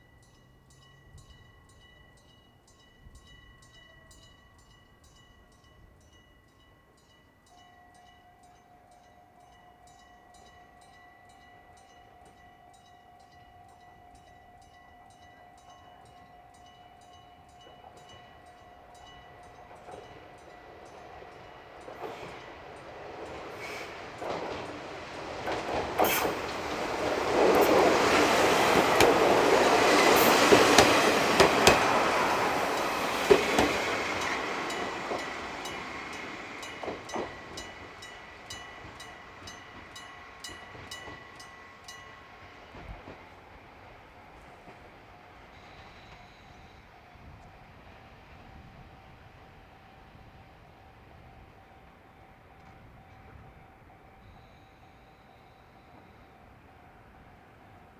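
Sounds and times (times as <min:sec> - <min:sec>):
level-crossing warning bell: 0:00.0 - 0:57.9
diesel train engine: 0:17.4 - 0:51.5
wheels knocking over rail joints: 0:23.2 - 0:35.3.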